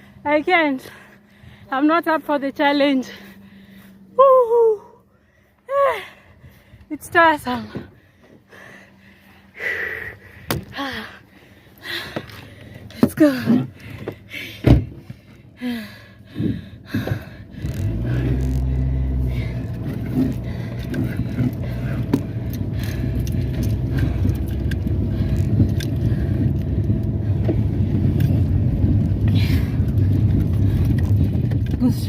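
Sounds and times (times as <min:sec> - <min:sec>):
car engine starting and running: 0:06.5 - 0:32.0.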